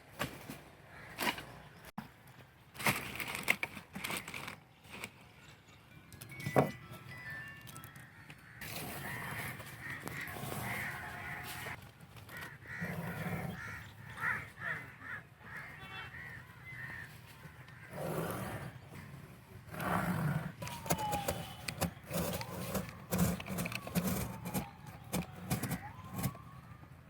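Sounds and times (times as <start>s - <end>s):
birds cawing: 8.0s - 19.1s.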